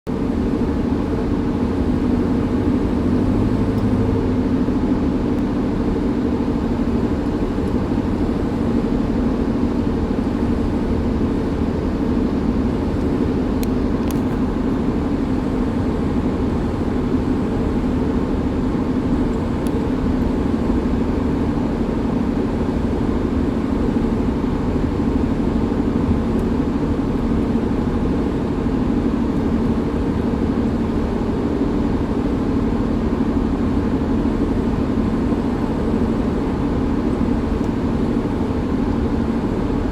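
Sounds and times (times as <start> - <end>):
road noise: 0.1 - 26.3
wheel bearing drone: 0.2 - 11.1.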